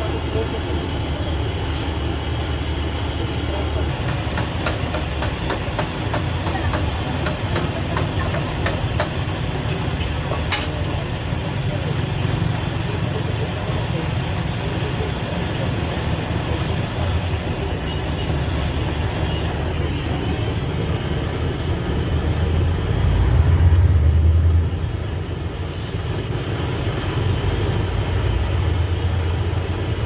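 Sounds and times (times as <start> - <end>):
motor vehicle rumbling: 0.0 - 30.0.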